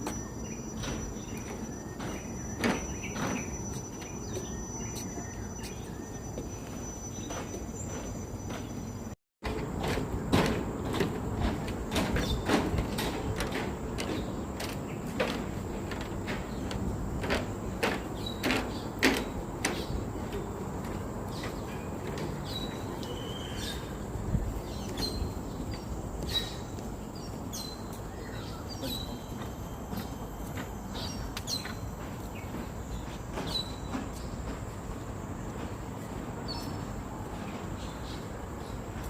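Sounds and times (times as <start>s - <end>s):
rustling outdoor noise: 0.0s - 39.0s
footsteps: 0.8s - 28.1s, 28.8s - 39.0s.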